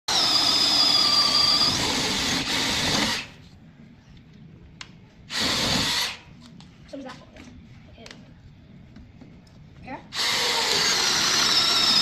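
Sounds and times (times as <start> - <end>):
power drill whining: 0.1 - 3.3, 5.3 - 6.2, 10.2 - 12.0.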